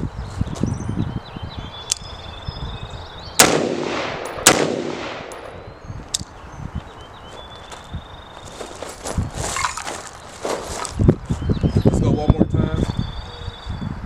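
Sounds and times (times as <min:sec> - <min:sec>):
rifle shots with echo: 0:03.4 - 0:05.8.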